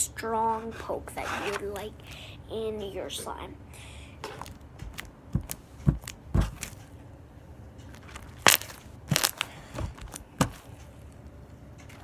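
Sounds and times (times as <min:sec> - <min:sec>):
slime crackling clicks and pops: 0:08.4 - 0:09.5.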